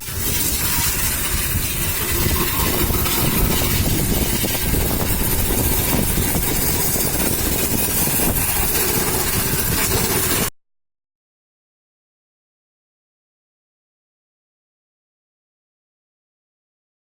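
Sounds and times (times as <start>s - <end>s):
pressure washer motor and pump: 0.0s - 10.5s
water spray hissing: 0.0s - 10.5s.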